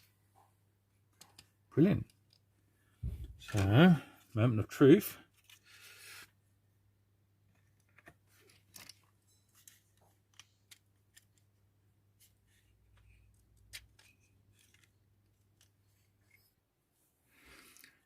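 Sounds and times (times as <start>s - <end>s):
plastic model parts clicking: 1.1s - 2.4s, 7.5s - 11.6s, 12.9s - 16.4s.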